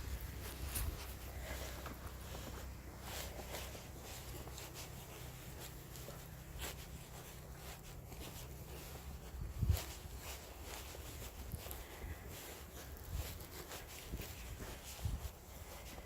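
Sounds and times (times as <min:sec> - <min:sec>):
footsteps crunching in snow: 0:00.0 - 0:16.0
steady low rumble: 0:00.0 - 0:16.0.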